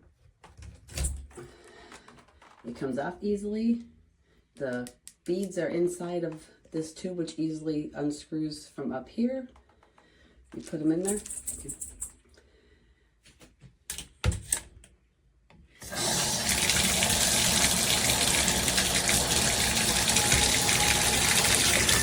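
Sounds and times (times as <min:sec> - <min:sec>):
shower head spraying water: 0:15.8 - 0:22.0.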